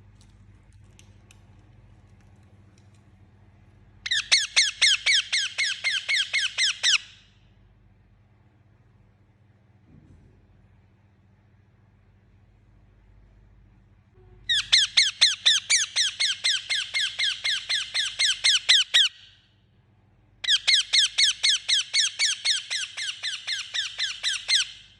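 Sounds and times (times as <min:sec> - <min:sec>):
parakeet rapid sharp calls: 0:04.1 - 0:07.2, 0:14.5 - 0:19.2, 0:20.4 - 0:24.8.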